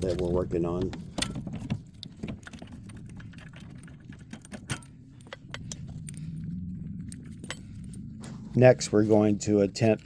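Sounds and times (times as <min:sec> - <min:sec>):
low steady hum: 0:00.0 - 0:10.0
clicks of hand tools and metal parts: 0:04.2 - 0:05.8.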